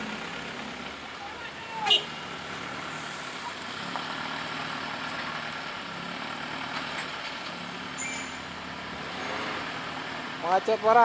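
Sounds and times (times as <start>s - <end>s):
vehicle engines idling: 0.0s - 11.0s
high squeak: 8.0s - 8.5s.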